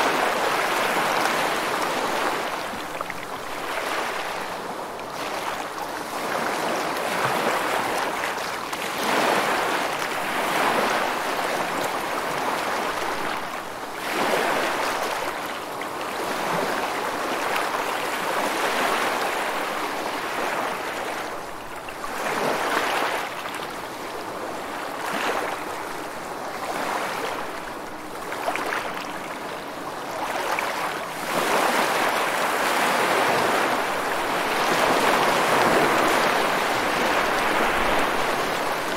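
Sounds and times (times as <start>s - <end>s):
sea surf washing: 0.0s - 8.4s, 24.2s - 38.9s.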